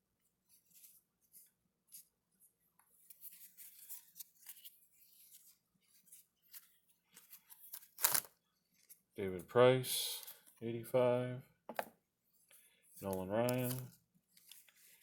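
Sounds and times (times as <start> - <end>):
cards being flipped through: 3.0 - 9.0, 13.0 - 15.0.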